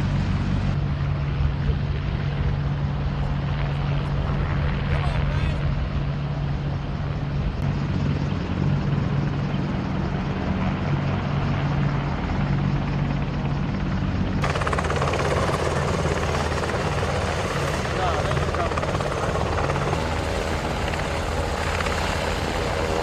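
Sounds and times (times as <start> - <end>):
helicopters droning: 0.0 - 23.0.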